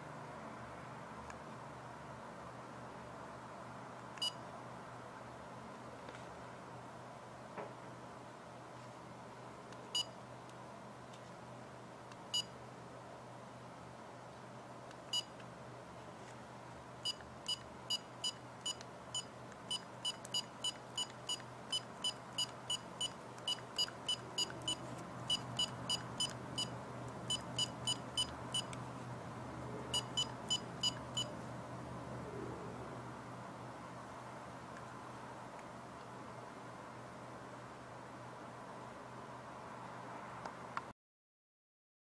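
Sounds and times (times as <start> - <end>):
short high calculator beeps: 17.0 - 26.7, 27.3 - 28.7, 29.9 - 31.3.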